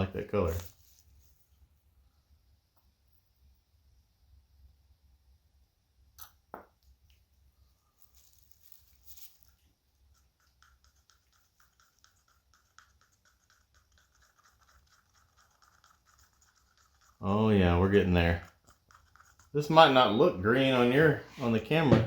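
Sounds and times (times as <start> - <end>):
stir stick scraping a cup: 10.1 - 20.1, 20.8 - 21.8.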